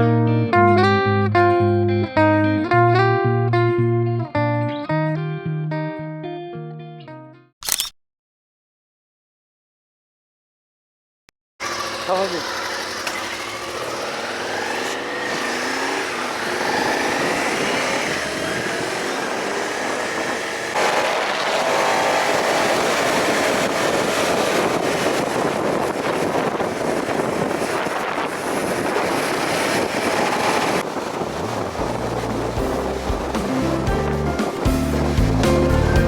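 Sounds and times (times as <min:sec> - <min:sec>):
music: 0:00.0 - 0:07.5, 0:32.0 - 0:36.0
motorcycle engine revving: 0:11.6 - 0:36.0
wind and road noise: 0:11.6 - 0:36.0.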